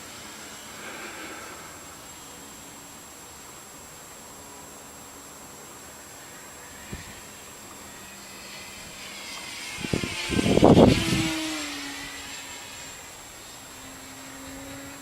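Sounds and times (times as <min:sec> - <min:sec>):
electric model plane whine: 0:00.0 - 0:15.0.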